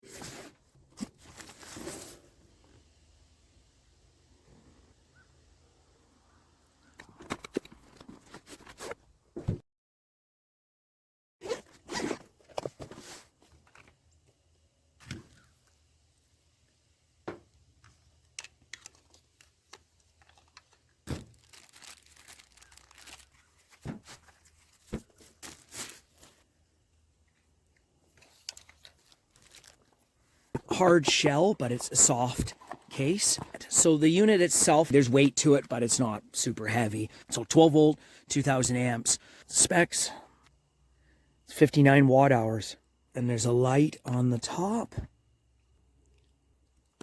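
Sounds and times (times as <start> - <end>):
zipper on soft case: 11.4 - 13.2
packaging tearing and rustling: 18.4 - 26.4, 28.2 - 30.1.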